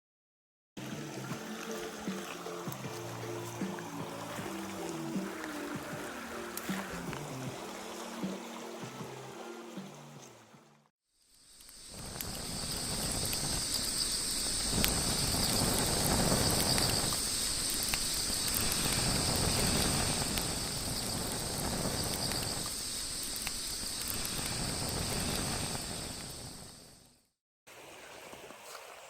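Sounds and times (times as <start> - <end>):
insects trilling: 1.4 - 9.8, 11.1 - 27.2
sharp crackles: 11.3 - 26.9.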